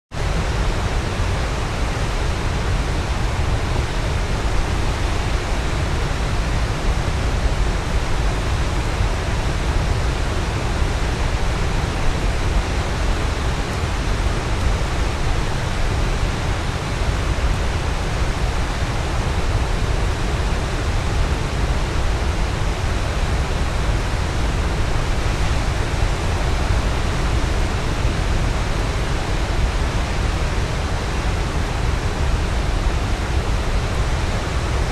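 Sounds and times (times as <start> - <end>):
waterfall rushing: 0.2 - 34.9.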